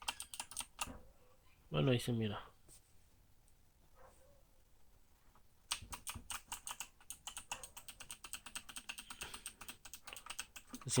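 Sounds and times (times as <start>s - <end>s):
mechanical keyboard key clicks: 0.0s - 0.9s, 5.7s - 10.8s.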